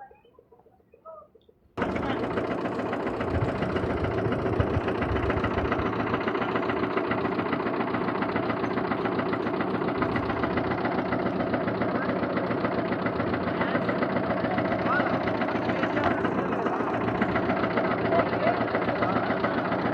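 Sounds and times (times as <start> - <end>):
engine running with rattle: 1.8 - 19.9.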